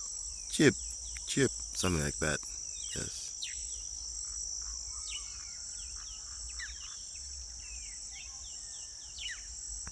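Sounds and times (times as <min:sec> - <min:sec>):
insects trilling: 0:00.2 - 0:07.2.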